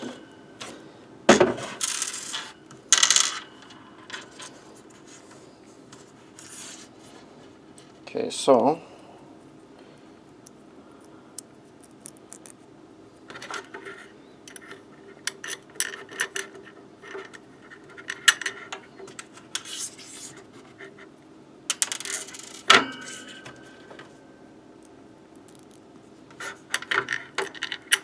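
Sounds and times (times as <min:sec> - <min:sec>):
sharp ringing clink: 0:22.8 - 0:23.8.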